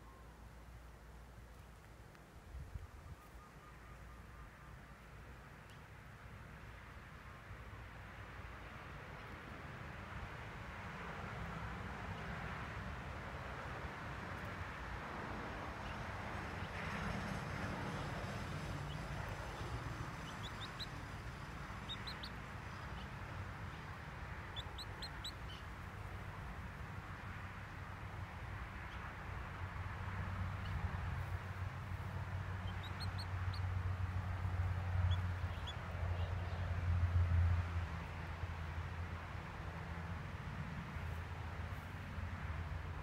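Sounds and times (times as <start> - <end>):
outdoor background noise: 0.0 - 43.0
bird chirps: 18.8 - 21.1, 21.8 - 23.1, 24.5 - 25.7, 32.6 - 33.7.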